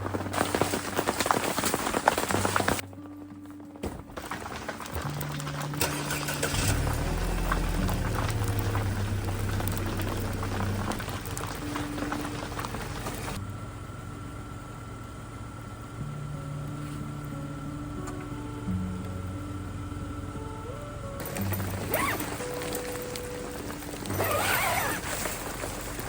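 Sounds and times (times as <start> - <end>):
car engine running: 0.0 - 26.0
heavy rain hissing: 5.1 - 13.4.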